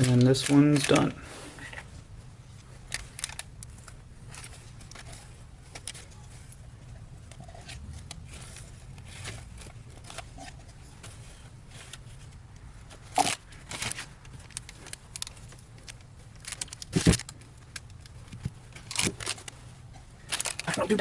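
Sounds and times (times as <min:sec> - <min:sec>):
tools and parts clicking: 0:00.0 - 0:01.1, 0:02.9 - 0:06.4, 0:13.1 - 0:19.6, 0:20.3 - 0:21.0.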